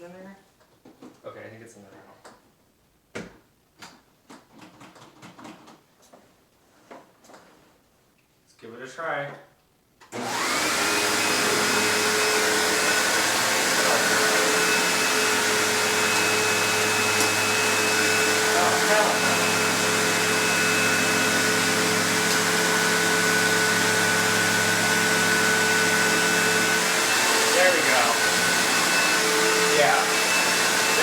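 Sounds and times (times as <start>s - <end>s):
vacuum cleaner running: 10.1s - 31.0s.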